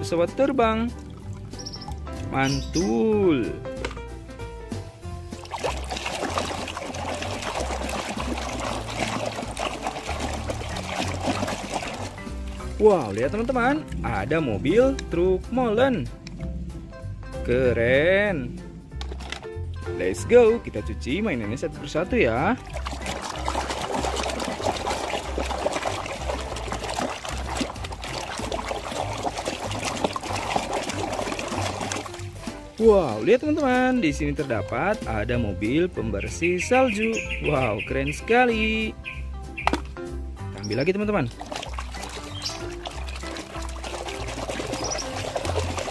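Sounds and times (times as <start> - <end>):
water running and splashing: 0.7 - 3.3, 5.1 - 14.7, 21.9 - 34.0, 40.6 - 45.9.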